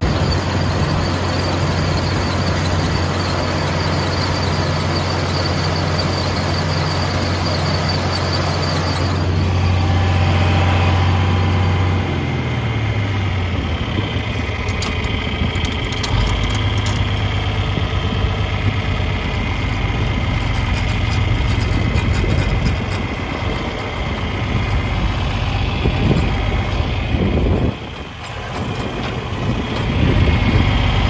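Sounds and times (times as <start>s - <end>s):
tractor engine running: 0.0s - 31.0s
light clicks and rattles: 20.4s - 24.3s.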